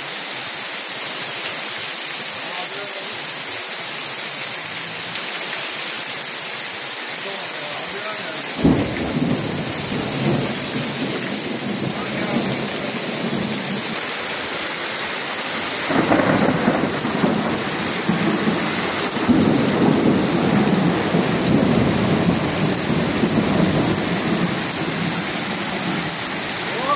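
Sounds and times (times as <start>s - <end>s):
heavy rain pouring: 0.0s - 26.9s
thunder rumbling: 8.6s - 14.0s, 15.8s - 26.9s.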